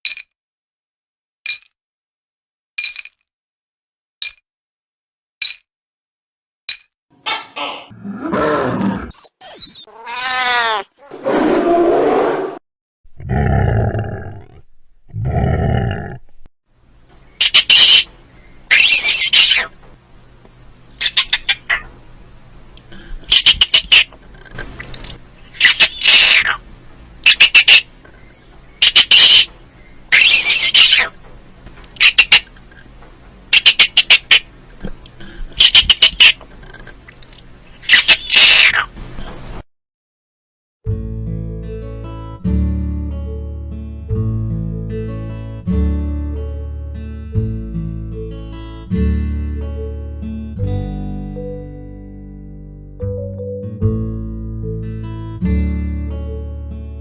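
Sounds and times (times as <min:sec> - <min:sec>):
animal call rising and falling: 0:07.2 - 0:12.6, 0:18.7 - 0:19.7, 0:30.1 - 0:31.1
low animal roars: 0:07.9 - 0:09.2, 0:13.2 - 0:16.4
squirrel chatter: 0:17.4 - 0:18.1, 0:18.7 - 0:19.7, 0:21.0 - 0:21.9, 0:23.3 - 0:26.6, 0:27.2 - 0:27.9, 0:28.8 - 0:29.5, 0:30.1 - 0:31.1, 0:32.0 - 0:32.7, 0:33.5 - 0:34.5, 0:35.6 - 0:37.2, 0:37.8 - 0:38.9.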